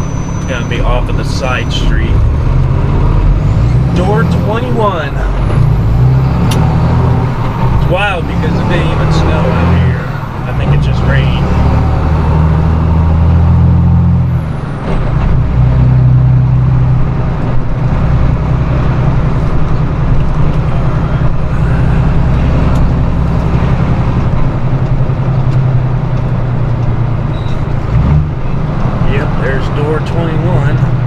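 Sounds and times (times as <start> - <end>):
truck engine running: 0.0 - 31.0.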